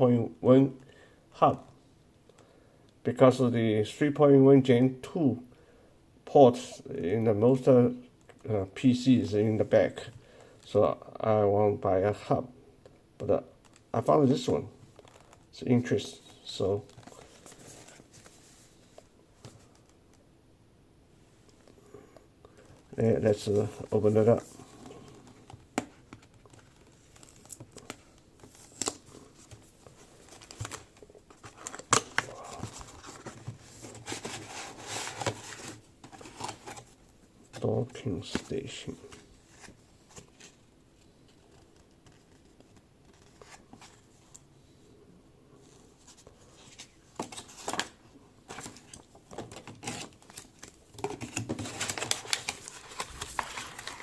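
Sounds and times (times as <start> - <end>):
packaging rustling and crinkling: 22.6 - 40.6, 46.0 - 54.0.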